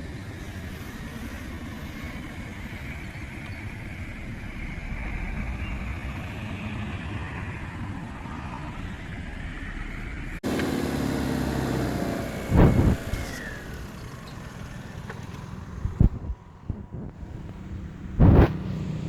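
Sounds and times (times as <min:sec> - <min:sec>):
car engine on rough ground: 0:00.0 - 0:19.0
heavy thuds: 0:15.9 - 0:18.8.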